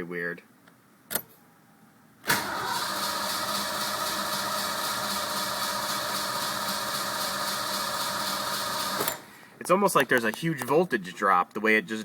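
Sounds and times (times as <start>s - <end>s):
starter cranking engine: 2.3s - 9.3s.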